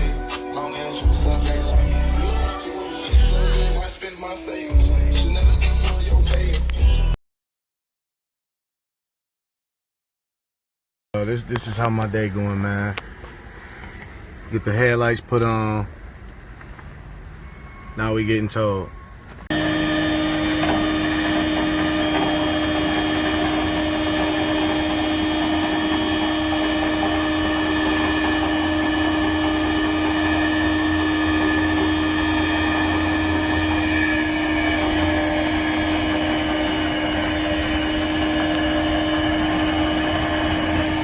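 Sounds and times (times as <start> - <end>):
machinery humming with mechanical whir: 0.0 - 7.1, 18.9 - 41.0.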